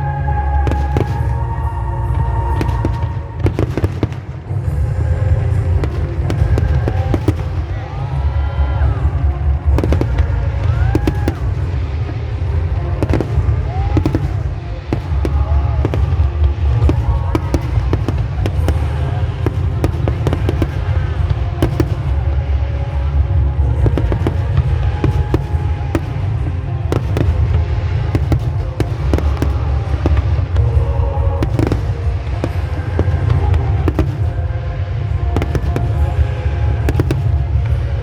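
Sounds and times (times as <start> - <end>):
fireworks bangs and crackles: 0.0 - 38.0
low rumble: 0.0 - 38.0
music playing: 0.0 - 38.0.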